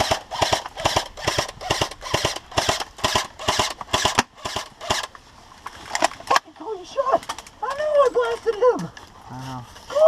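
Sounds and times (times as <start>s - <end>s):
airsoft gun rapid shots: 0.0s - 5.1s.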